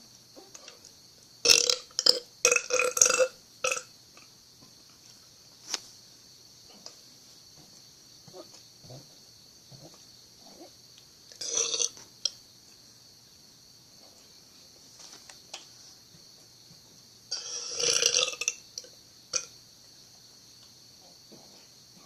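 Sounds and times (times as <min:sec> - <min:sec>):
person burping: 0:01.5 - 0:03.8, 0:11.4 - 0:11.9, 0:17.3 - 0:18.5.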